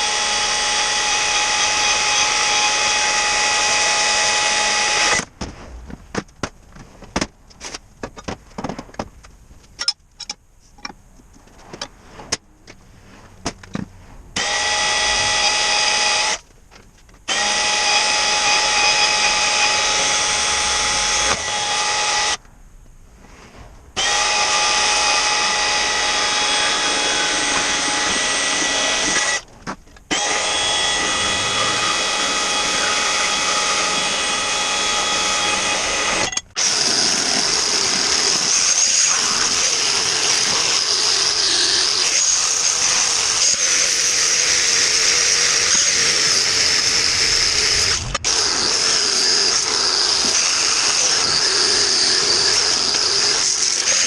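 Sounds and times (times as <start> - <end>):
power tool motor whine: 0.0 - 5.3, 14.4 - 16.4, 17.3 - 22.4, 24.0 - 29.4, 30.1 - 54.0.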